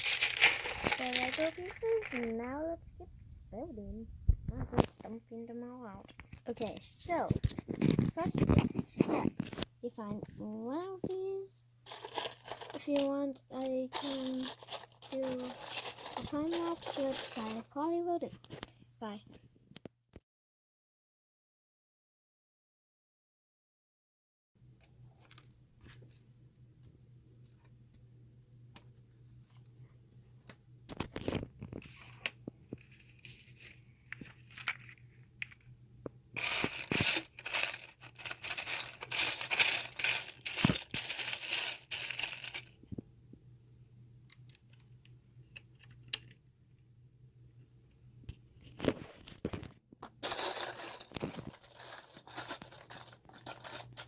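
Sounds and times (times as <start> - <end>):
plastic pieces clicking: 0.0 - 2.3, 36.4 - 42.7
faint low hum: 0.0 - 19.7
loud rattling and rustling: 36.4 - 42.6.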